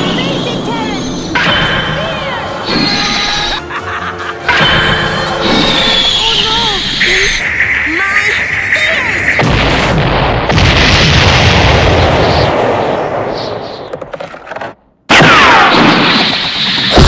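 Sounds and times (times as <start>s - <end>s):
cartoon rumbling blast: 4.5s - 13.8s
burst with falling whistle: 5.5s - 7.5s.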